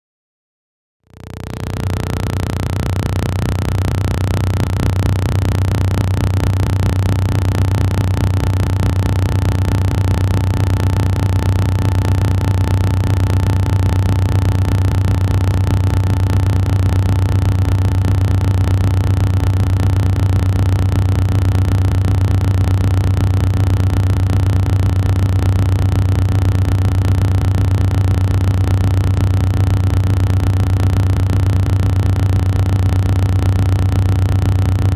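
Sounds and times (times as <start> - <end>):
faint steady tones: 1.1 - 20.5
deep droning hum: 1.1 - 34.9.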